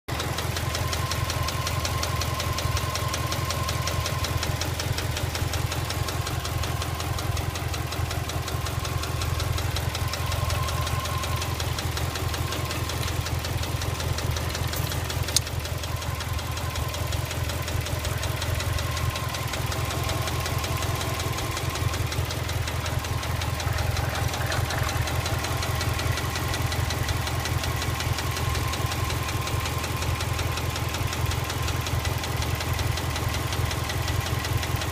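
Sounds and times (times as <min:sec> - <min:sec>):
car engine idling with knock: 0:00.1 - 0:34.9
sharp click: 0:14.8 - 0:15.6.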